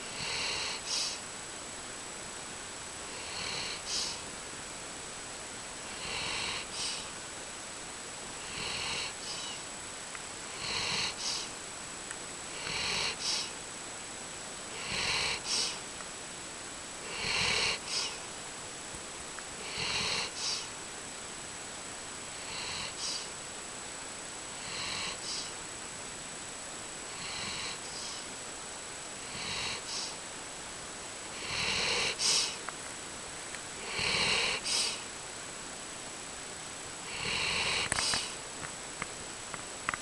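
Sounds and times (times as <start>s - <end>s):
person snoring: 0.0s - 1.2s, 3.1s - 4.2s, 5.8s - 7.2s, 8.4s - 9.6s, 10.5s - 11.6s, 12.5s - 13.6s, 14.7s - 15.8s, 17.0s - 18.2s, 19.6s - 20.7s, 22.3s - 23.4s, 24.6s - 25.6s, 27.1s - 28.3s, 29.2s - 30.2s, 31.3s - 32.6s, 33.8s - 35.1s, 37.0s - 38.4s.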